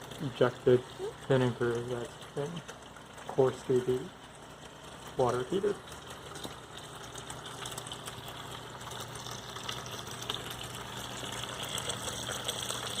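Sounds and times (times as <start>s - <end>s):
aquarium pump humming: 0.0s - 13.0s
liquid splashing into a bucket: 4.3s - 13.0s.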